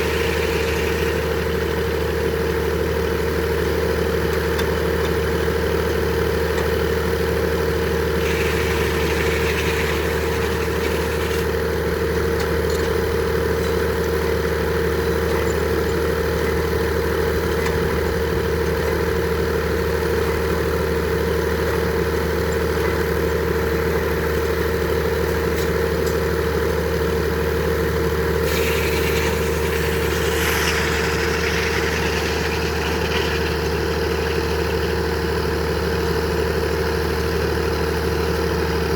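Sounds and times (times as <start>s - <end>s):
sawmill engine humming: 0.0s - 38.9s
high hiss: 28.4s - 34.8s.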